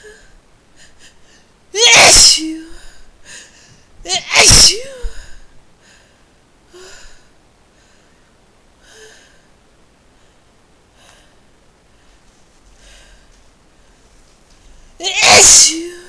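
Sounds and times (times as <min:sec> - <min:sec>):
soft breaths with vocal catch: 0:05.0 - 0:15.0.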